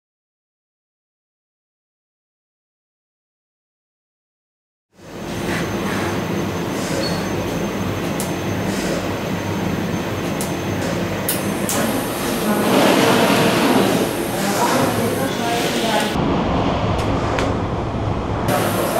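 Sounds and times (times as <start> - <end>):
industrial machine hum: 4.9 - 18.9.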